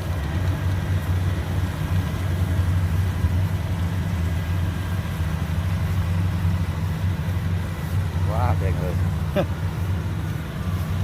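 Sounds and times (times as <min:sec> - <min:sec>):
diesel engine low drone: 0:00.0 - 0:11.0.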